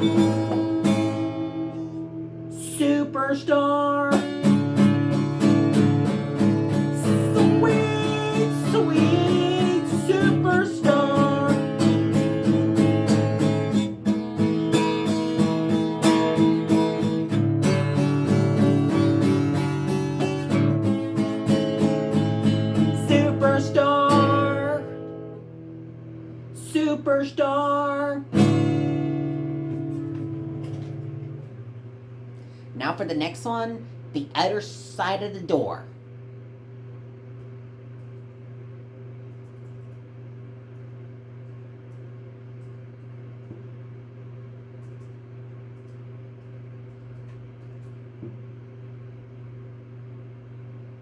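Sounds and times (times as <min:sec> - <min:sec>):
acoustic guitar strumming chords: 0:00.0 - 0:31.7.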